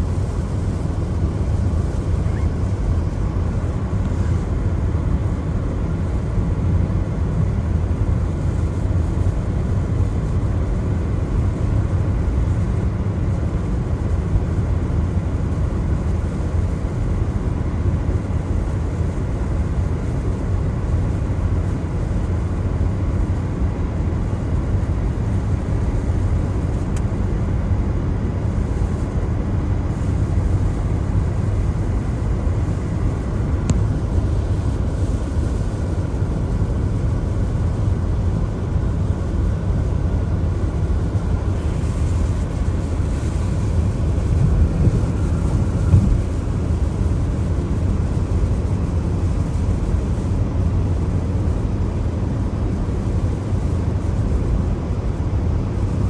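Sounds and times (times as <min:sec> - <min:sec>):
rain: 0:33.8 - 0:54.6, 0:55.7 - 0:56.0
tyre noise on wet road: 0:40.8 - 0:50.0.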